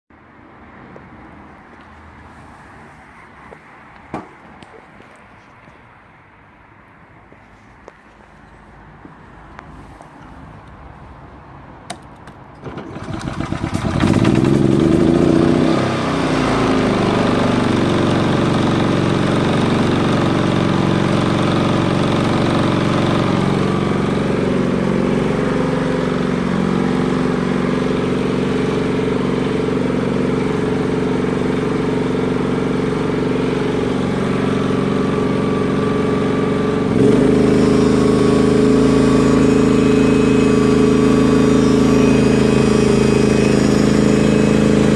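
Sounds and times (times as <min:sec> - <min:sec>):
petrol generator running: 0:12.6 - 0:44.9.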